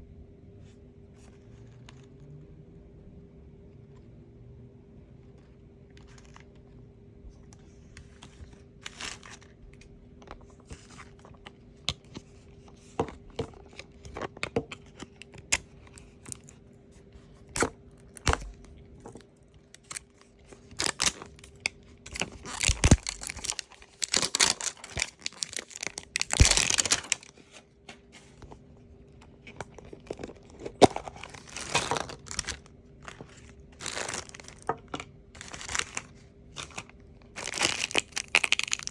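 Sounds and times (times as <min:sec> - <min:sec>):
packaging tearing and crinkling: 0:17.5 - 0:27.5, 0:29.4 - 0:34.8, 0:35.4 - 0:38.9
packaging clicks and taps: 0:20.7 - 0:27.3.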